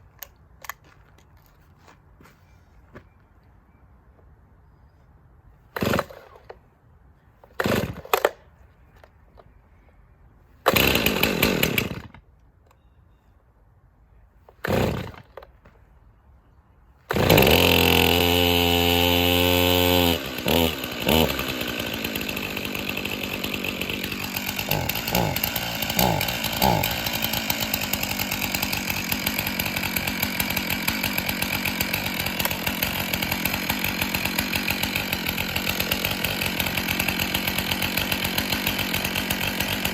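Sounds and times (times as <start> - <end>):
chainsaw starter cord pulls: 5.7 - 6.6, 7.4 - 9.5, 10.6 - 12.8, 14.5 - 15.7, 17.1 - 39.9
chainsaw engine running: 5.8 - 6.4, 7.5 - 8.4, 10.6 - 12.2, 14.5 - 15.4, 17.1 - 39.9.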